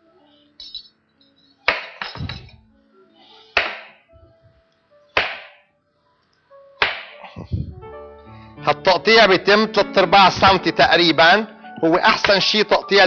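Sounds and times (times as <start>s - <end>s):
knife chopping on cutting board: 3.6s - 4.0s, 5.2s - 5.6s.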